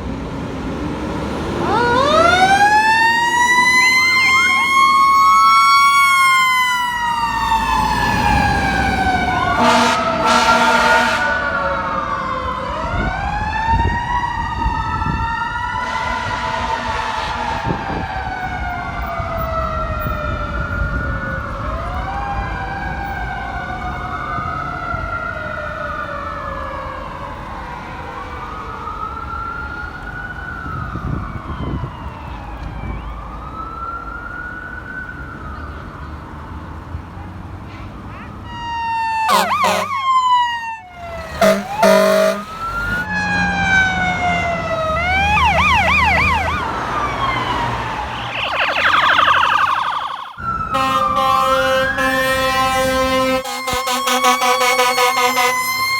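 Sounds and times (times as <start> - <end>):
mechanical siren winding down: 1.6 - 16.3, 38.5 - 52.0
electronic siren wailing: 1.6 - 23.2, 38.4 - 55.9
air horn blast: 9.6 - 11.5, 15.8 - 17.8, 39.3 - 40.0, 41.4 - 42.6, 50.7 - 55.7.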